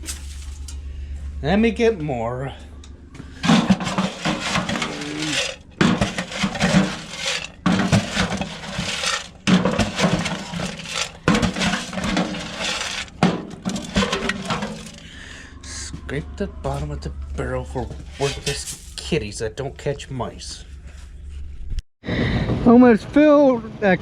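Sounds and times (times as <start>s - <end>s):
pellets clinking: 0.0s - 0.8s, 3.4s - 15.1s.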